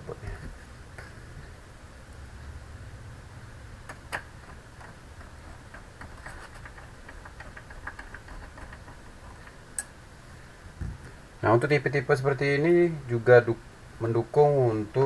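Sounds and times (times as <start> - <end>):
low steady hum: 0.0 - 15.0
small clicks and taps: 3.9 - 9.9.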